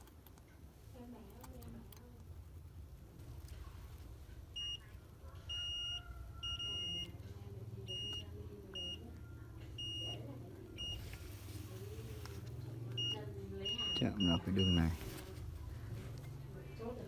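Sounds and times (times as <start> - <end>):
multimeter continuity beeps: 4.5 - 11.2, 12.9 - 15.1.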